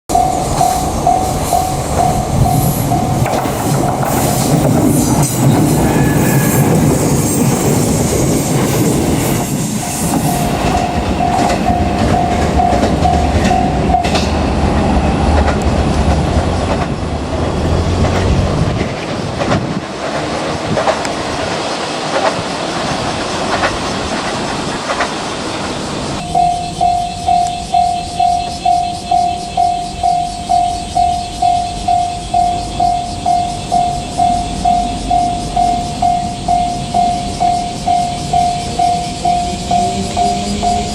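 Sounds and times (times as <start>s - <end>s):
level crossing warning bell: 0.1s - 8.0s, 9.5s - 14.5s, 26.2s - 40.9s
train wheels clacking on rails: 0.1s - 40.9s.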